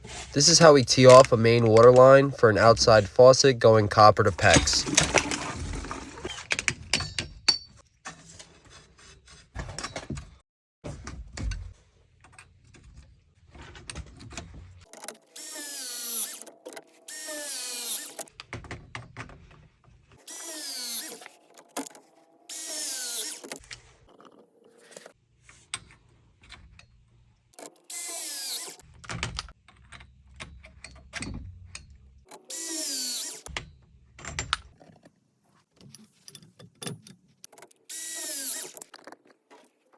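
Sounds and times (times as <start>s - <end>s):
knocks and handling noises: 0.0s - 3.1s
high-pitched tool whirring: 15.3s - 16.5s, 17.1s - 18.3s, 20.2s - 21.4s, 22.5s - 23.6s, 27.9s - 28.8s, 32.5s - 33.5s, 37.9s - 38.8s.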